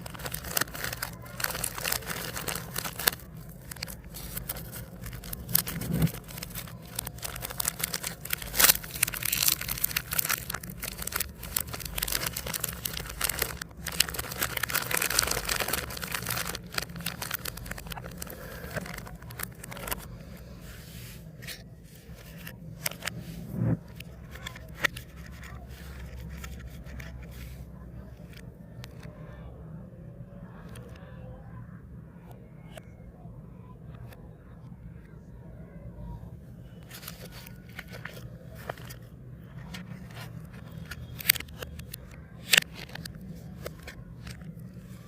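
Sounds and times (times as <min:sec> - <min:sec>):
plastic wrappers crinkling: 0:00.0 - 0:20.1, 0:23.9 - 0:27.4, 0:36.8 - 0:45.0.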